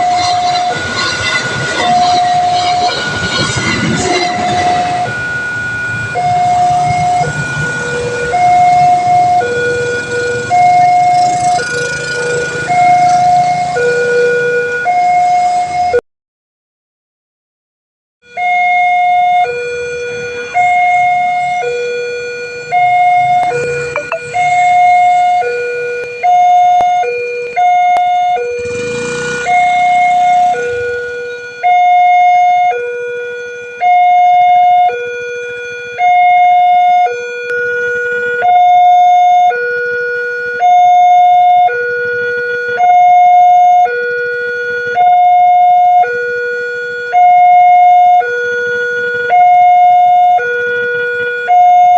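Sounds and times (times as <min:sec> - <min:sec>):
two-tone level crossing siren: 0:00.0 - 0:16.0, 0:18.2 - 0:51.9.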